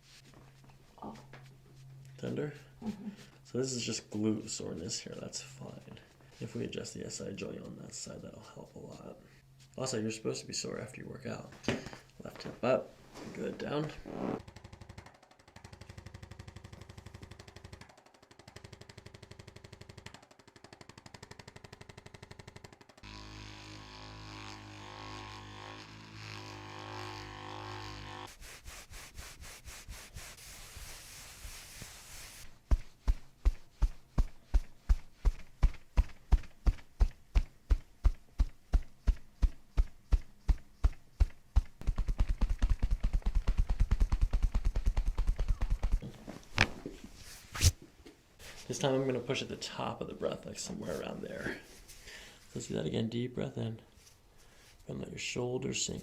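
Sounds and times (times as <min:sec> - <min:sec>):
small motorized device buzzing: 0:23.0 - 0:28.3.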